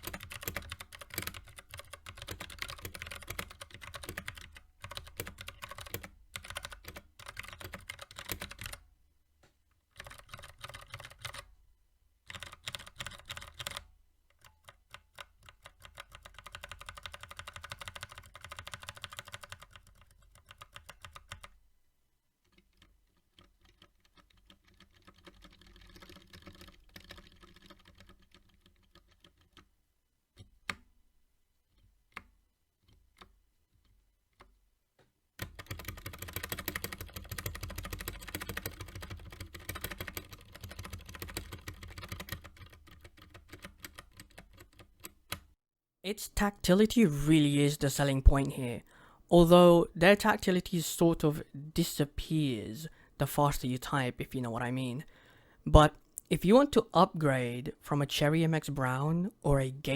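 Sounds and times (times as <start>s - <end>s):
mechanical keyboard typing: 0.0s - 8.8s, 9.9s - 11.5s, 12.3s - 21.6s, 22.5s - 29.6s, 35.4s - 45.4s.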